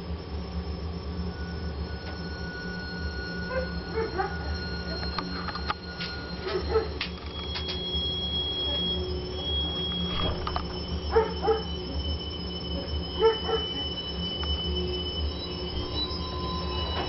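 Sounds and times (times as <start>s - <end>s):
low hum: 0.0s - 17.0s
boiler high whistle: 0.6s - 17.0s.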